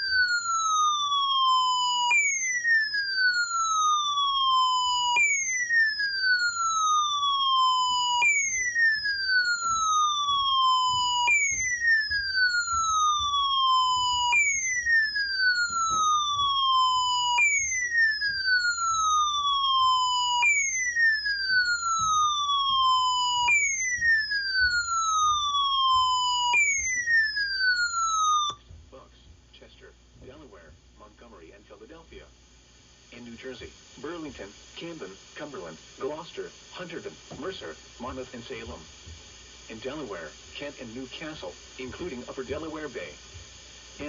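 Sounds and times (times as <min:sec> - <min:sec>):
falling electronic alert tone: 0:00.0 - 0:28.6.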